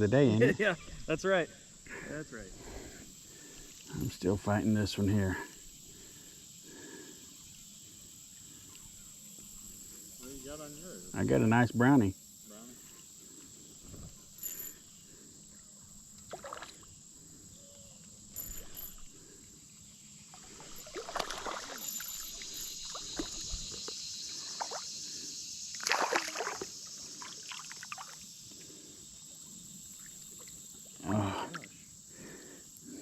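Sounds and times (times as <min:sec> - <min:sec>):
high insect hiss: 0:00.0 - 0:33.0
water splashing in creek: 0:16.2 - 0:16.9, 0:20.3 - 0:23.9, 0:24.5 - 0:25.0, 0:25.7 - 0:28.3.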